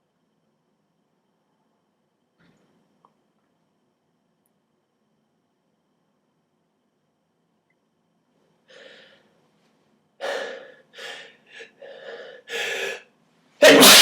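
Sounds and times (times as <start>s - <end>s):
person gasping breaths: 8.7s - 9.4s, 10.2s - 13.1s.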